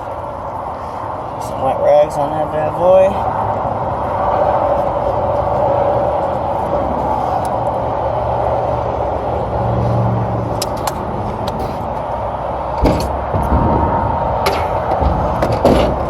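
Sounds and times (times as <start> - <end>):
rumbling noise with low hum: 0.0 - 16.0
thump: 12.8 - 16.0.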